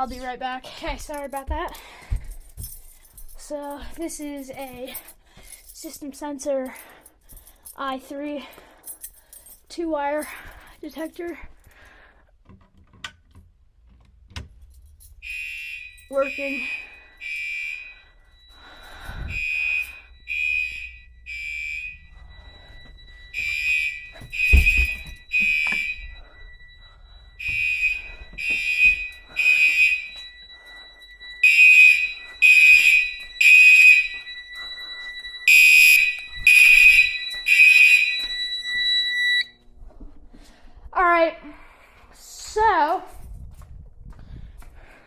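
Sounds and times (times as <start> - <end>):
fire alarm horn blasts: 15.2 - 39.6
thin steady high tone: 15.2 - 39.6.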